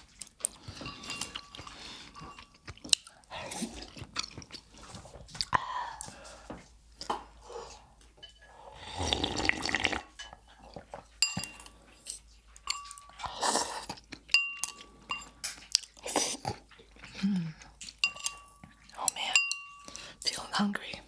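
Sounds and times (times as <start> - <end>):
utensils clinking against bowl: 0.1 - 3.2, 8.0 - 8.5, 10.1 - 21.0
noodles slurped: 8.7 - 10.2, 13.0 - 14.3, 15.5 - 18.1.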